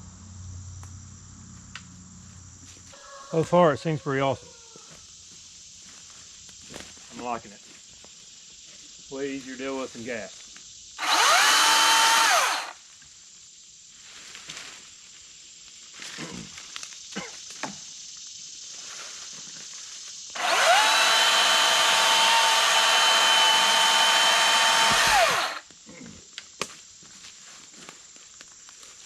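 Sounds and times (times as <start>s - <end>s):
cordless chainsaw motor spinning: 11.0s - 12.8s, 20.4s - 25.6s.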